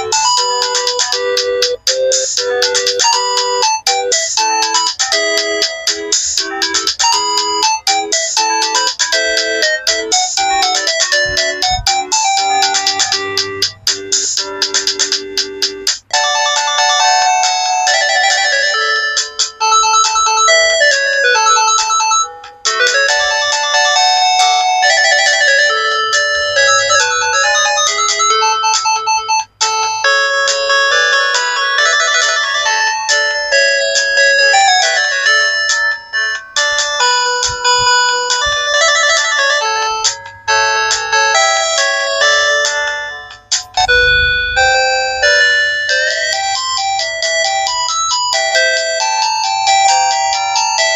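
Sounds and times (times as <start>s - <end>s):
polyphonic phone ringtone: 0.0s - 50.9s.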